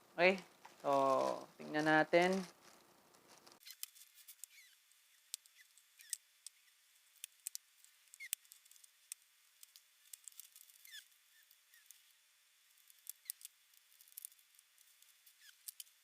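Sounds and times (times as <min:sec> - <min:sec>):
short squeaks: 0:03.5 - 0:04.8, 0:10.6 - 0:11.9.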